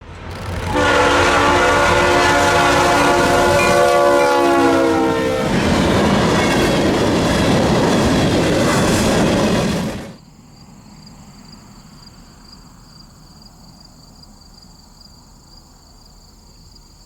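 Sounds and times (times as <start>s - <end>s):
train engine rumble: 0.0s - 13.3s
locomotive air horn blast: 0.3s - 5.9s.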